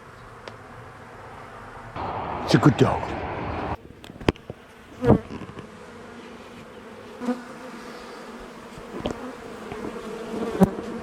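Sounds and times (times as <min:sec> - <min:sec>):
honeybees buzzing: 0:04.6 - 0:11.0.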